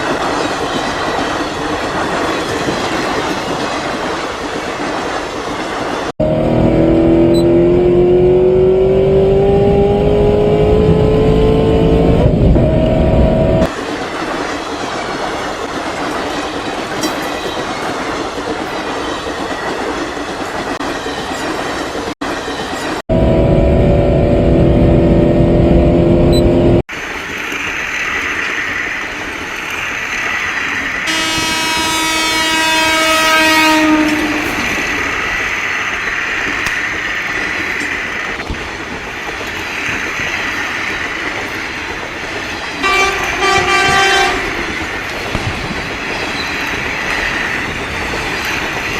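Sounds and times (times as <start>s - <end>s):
train rumble and wheel clatter: 0.0s - 48.9s
train horn: 31.0s - 34.9s, 42.8s - 44.6s.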